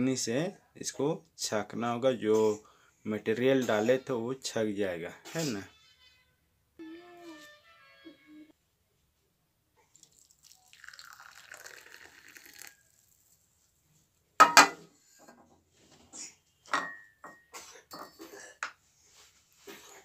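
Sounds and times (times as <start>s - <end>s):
liquid pouring into cup: 9.9s - 13.4s
kitchenware clinks: 14.4s - 14.8s, 16.7s - 18.7s
kitchenware knock: 14.4s - 14.8s, 16.7s - 17.5s.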